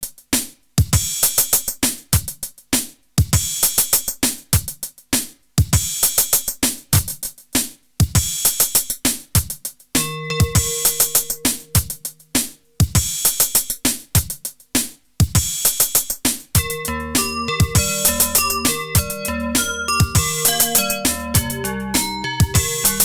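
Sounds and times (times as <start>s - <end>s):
hi-hat ticks: 0.9s - 2.7s, 5.7s - 23.0s
drum machine kicks: 9.4s - 13.4s, 16.6s - 23.0s.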